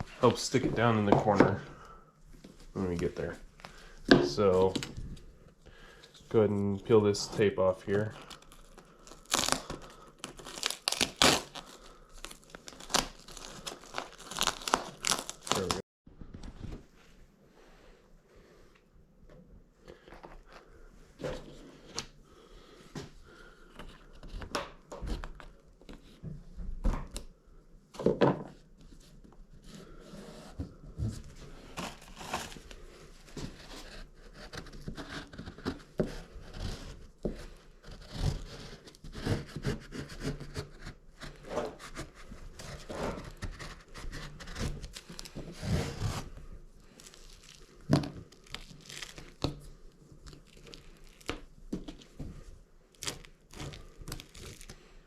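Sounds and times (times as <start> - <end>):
vinyl crinkling and tearing: 6.4 - 15.8, 31.8 - 32.8, 44.3 - 52.1, 52.9 - 54.8.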